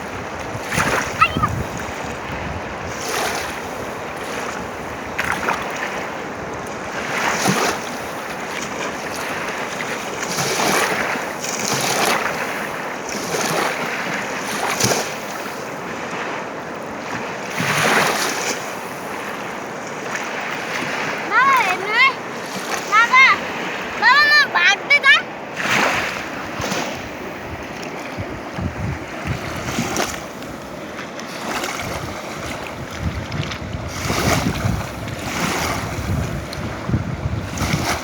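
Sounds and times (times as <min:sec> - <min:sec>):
river water rushing: 0:00.0 - 0:02.2, 0:16.6 - 0:38.0.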